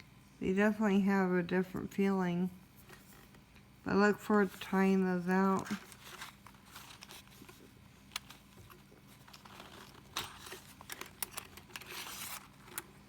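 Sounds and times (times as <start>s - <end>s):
faint steady hum: 0.0s - 13.0s
packaging crinkling: 5.4s - 13.0s.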